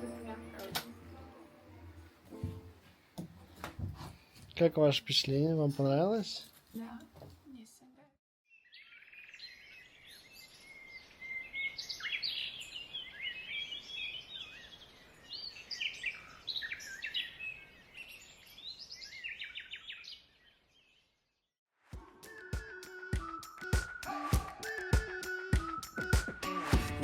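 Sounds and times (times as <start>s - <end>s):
songbirds chirping and trilling: 8.5s - 21.2s.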